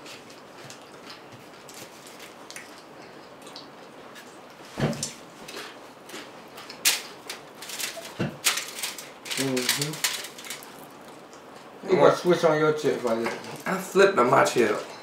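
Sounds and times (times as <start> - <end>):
crunchy food chewed: 0.0 - 4.4.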